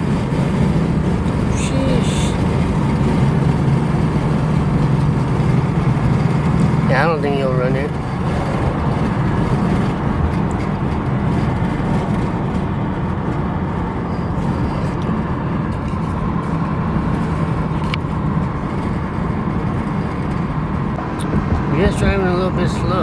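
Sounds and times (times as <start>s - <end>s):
car engine driving slowly: 0.0s - 23.0s
road noise: 0.0s - 23.0s.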